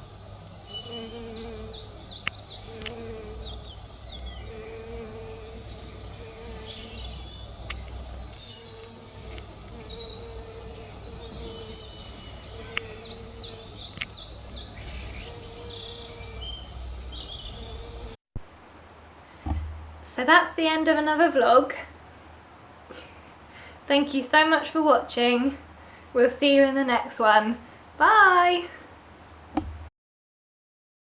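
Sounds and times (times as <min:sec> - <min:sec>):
songbirds singing and chirping: 0:00.0 - 0:18.2.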